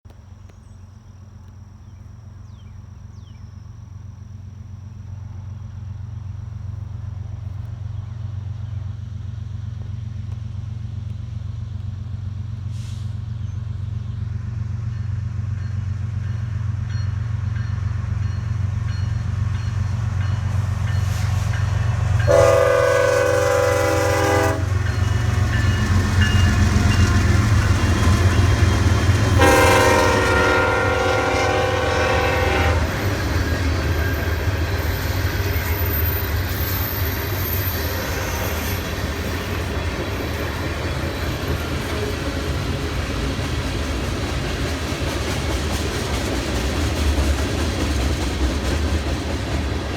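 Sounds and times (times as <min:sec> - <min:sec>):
locomotive engine rumble: 0:00.1 - 0:49.9
locomotive air horn: 0:22.2 - 0:24.9, 0:29.3 - 0:33.0.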